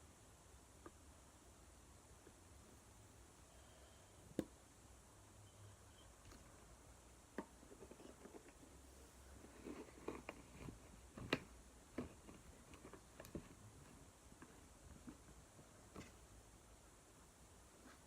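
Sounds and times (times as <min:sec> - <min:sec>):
soft rustling: 0:07.7 - 0:16.3.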